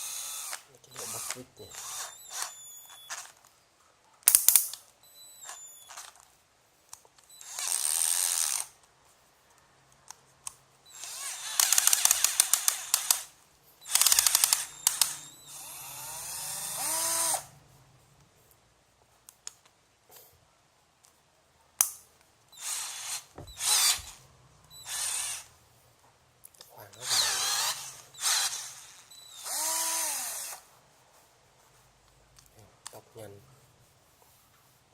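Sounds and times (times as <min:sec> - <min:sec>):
cordless drill motor spinning: 0:00.0 - 0:03.4, 0:05.1 - 0:06.2, 0:07.3 - 0:08.7, 0:10.9 - 0:17.5, 0:22.6 - 0:25.5, 0:27.0 - 0:30.7
rapid clicking of drill: 0:00.0 - 0:03.4, 0:07.4 - 0:08.7, 0:10.9 - 0:17.5, 0:22.6 - 0:25.5, 0:27.0 - 0:30.6.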